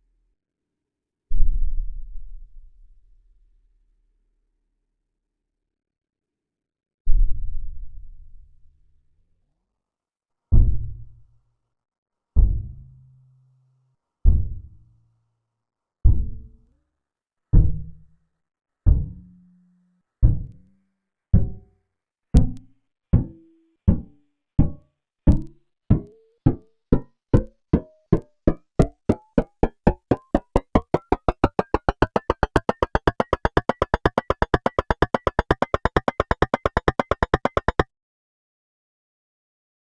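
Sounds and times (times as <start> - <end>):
deep synthesized drum thuds: 27.0 - 37.8.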